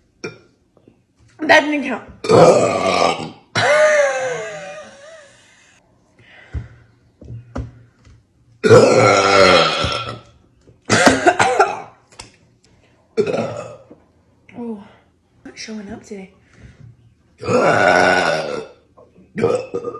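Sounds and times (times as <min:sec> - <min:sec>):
woman burping loudly: 0:02.2 - 0:05.4, 0:08.6 - 0:10.3, 0:10.9 - 0:12.0, 0:13.2 - 0:13.9, 0:17.4 - 0:19.9.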